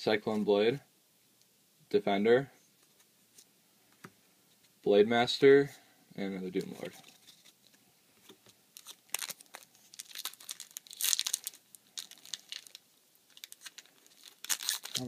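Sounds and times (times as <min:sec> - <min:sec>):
foil wrapper crinkling and tearing: 0:08.8 - 0:15.0.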